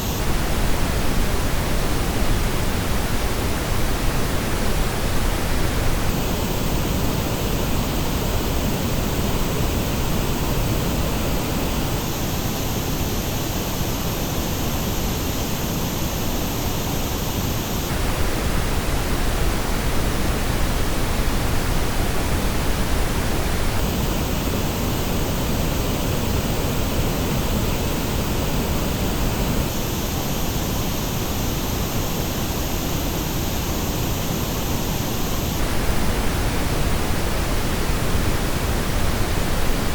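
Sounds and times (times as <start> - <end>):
pink noise hiss: 0.0 - 39.9.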